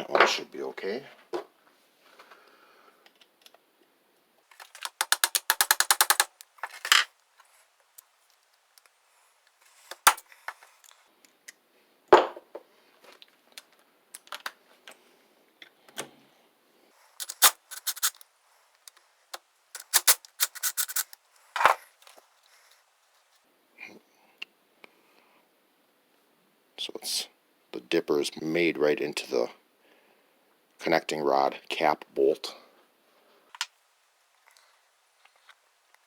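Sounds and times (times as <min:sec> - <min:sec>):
socket ratchet clicking: 0:04.5 - 0:07.1, 0:09.8 - 0:10.2, 0:17.2 - 0:18.2, 0:19.8 - 0:21.2.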